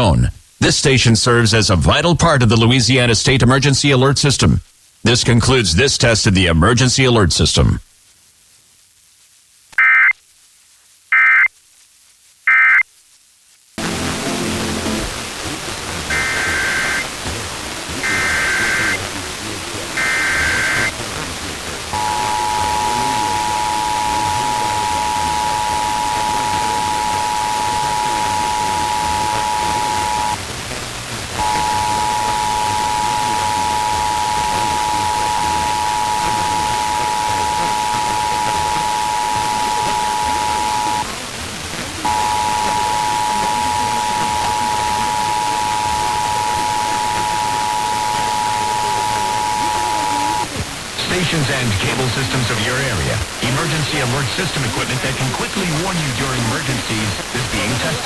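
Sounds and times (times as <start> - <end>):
static hiss: 0.0 - 58.0
two-tone attention signal: 16.1 - 17.0, 18.0 - 19.0, 20.0 - 20.9, 21.9 - 30.4, 31.4 - 41.1, 42.1 - 50.5
screeching digital data bursts: 16.1 - 17.1, 18.0 - 19.0, 20.0 - 21.0, 21.9 - 30.4, 31.4 - 41.1, 42.1 - 50.5.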